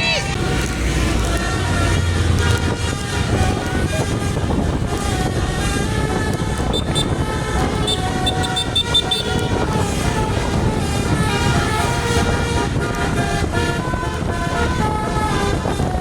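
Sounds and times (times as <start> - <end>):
bus engine: 0.0 - 16.0
road noise: 0.0 - 16.0
musical air horn playing a tune: 0.4 - 16.0.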